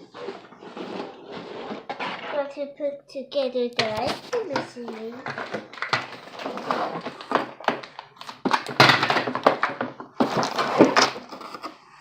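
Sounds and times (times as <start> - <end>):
plastic parts knocking and clicking: 3.8 - 11.8
packaging rustling: 4.0 - 11.8.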